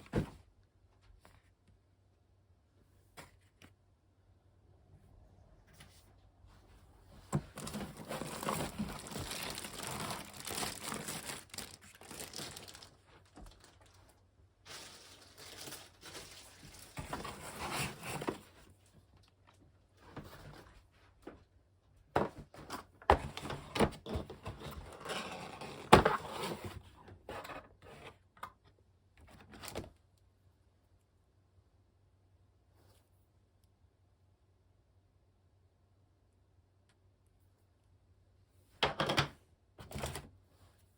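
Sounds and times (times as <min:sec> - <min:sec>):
plastic wrap and cardboard crinkling: 0:07.3 - 0:19.6.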